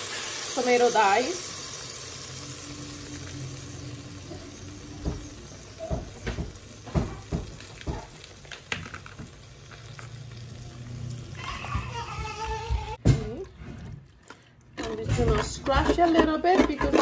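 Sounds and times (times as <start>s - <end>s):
tomatoes sizzling in pot: 0.0s - 13.7s
can and utensil knocking pot: 14.8s - 17.0s.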